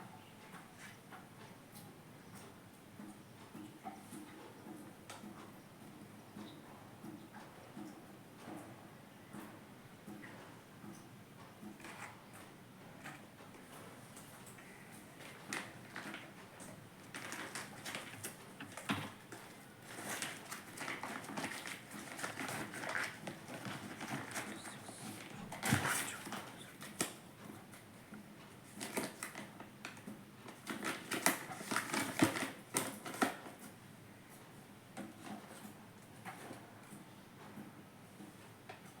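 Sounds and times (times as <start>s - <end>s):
packaging rustling: 17.0s - 27.2s, 30.6s - 33.4s.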